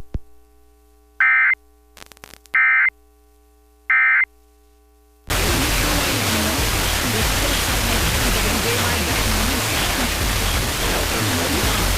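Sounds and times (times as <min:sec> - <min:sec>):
radio static hiss: 0:01.2 - 0:02.9, 0:05.2 - 0:11.9.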